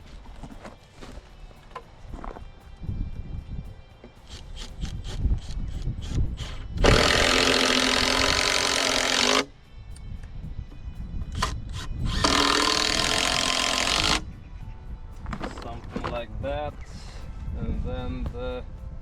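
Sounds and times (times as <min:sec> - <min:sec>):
power drill driving screws into wood: 0:04.3 - 0:09.5, 0:11.4 - 0:14.2.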